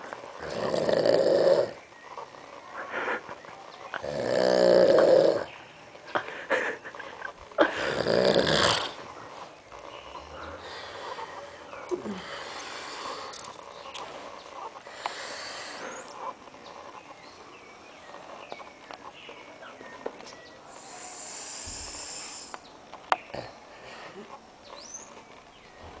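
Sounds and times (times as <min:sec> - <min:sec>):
pig snoring: 0:00.0 - 0:03.3, 0:03.9 - 0:05.6, 0:07.4 - 0:16.4, 0:20.8 - 0:22.6, 0:23.3 - 0:23.9.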